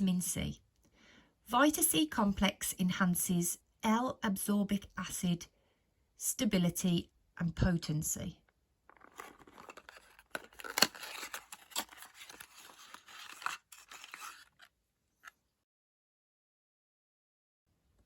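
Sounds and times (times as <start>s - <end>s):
packaging scraping and crinkling: 8.9s - 15.3s.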